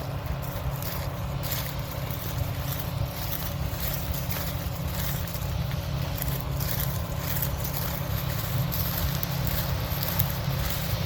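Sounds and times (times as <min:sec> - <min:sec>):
diesel engine running steadily: 0:00.0 - 0:11.0.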